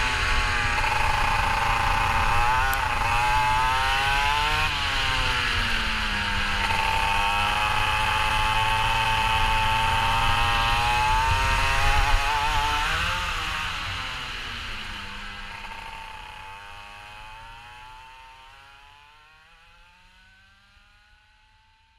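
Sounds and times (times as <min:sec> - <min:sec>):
go-kart engine revving: 0:00.0 - 0:21.7.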